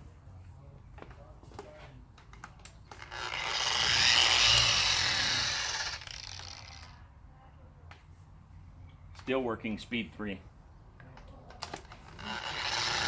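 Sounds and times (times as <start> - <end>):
machine polisher whirring: 3.0 - 6.9, 12.2 - 13.0.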